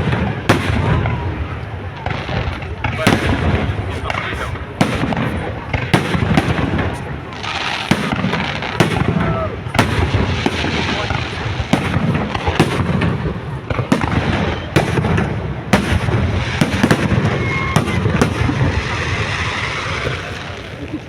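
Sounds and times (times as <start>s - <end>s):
rumble of fireworks bursts: 0.0s - 21.0s.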